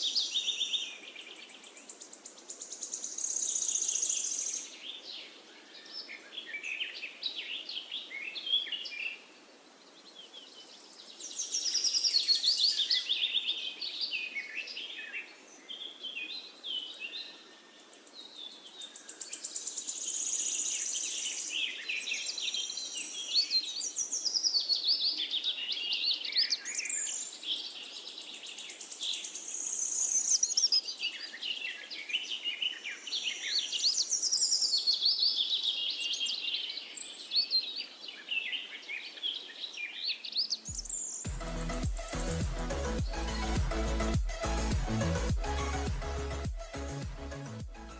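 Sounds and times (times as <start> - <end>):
finches singing: 16.4 - 47.9.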